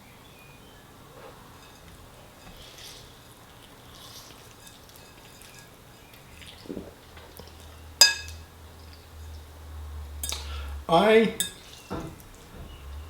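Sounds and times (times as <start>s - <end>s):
eating spaghetti: 0.9s - 9.6s
cutlery clinking against bowl: 1.5s - 6.5s, 7.5s - 8.4s, 10.2s - 10.6s, 11.4s - 12.4s.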